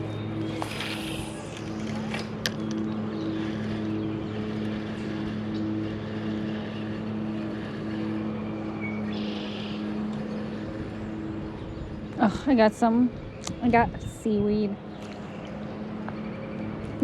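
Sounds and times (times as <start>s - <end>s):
low motor drone: 0.0s - 17.0s
wind noise: 10.6s - 14.7s.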